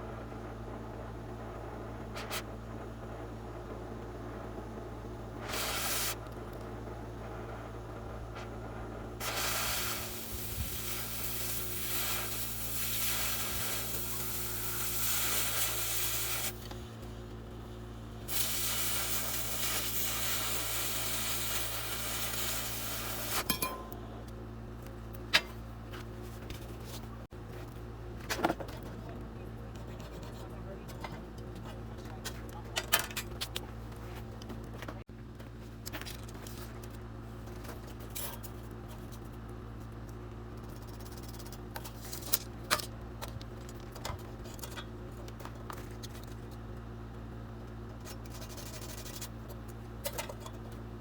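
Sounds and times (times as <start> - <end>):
steady electrical hum: 0.0 - 51.0
welder arc sizzling: 5.4 - 6.3, 9.2 - 17.0, 18.2 - 23.8.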